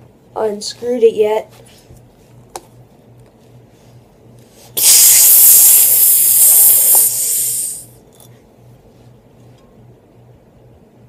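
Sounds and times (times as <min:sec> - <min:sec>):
fire extinguisher gas hissing: 0:04.8 - 0:07.9.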